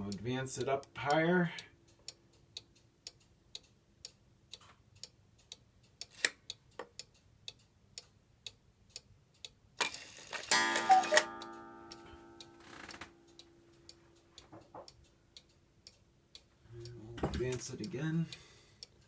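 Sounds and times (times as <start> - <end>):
clock hand clicks: 0.0 - 16.5
clock ticking: 0.0 - 19.0
ringing clock strike: 10.5 - 13.6
cuckoo call: 10.6 - 12.2.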